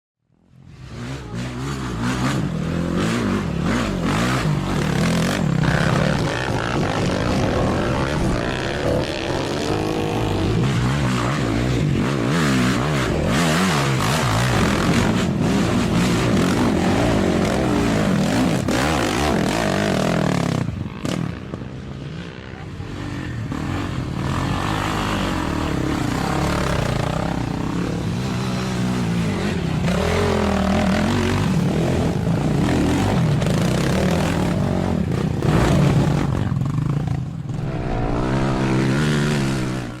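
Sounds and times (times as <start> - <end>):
quad engine revving: 0.8 - 21.3, 23.0 - 40.0.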